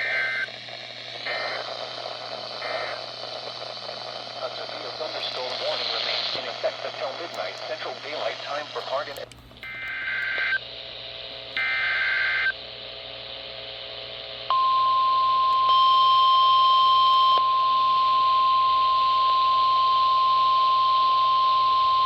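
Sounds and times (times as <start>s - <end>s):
steady warning alarm tone: 7.2s - 10.6s, 14.5s - 22.0s.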